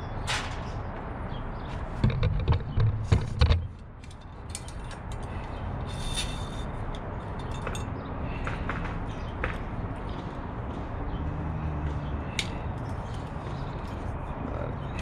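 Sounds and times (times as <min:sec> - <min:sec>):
bicycle parts clicking and rattling: 0:02.0 - 0:08.0, 0:12.4 - 0:14.1.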